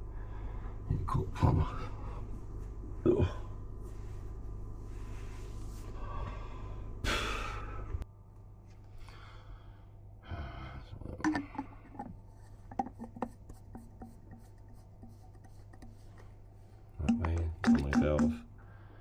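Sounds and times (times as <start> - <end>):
low machinery hum: 0.0 - 19.0
metal pipe fittings clinking: 11.2 - 14.4, 17.0 - 18.5.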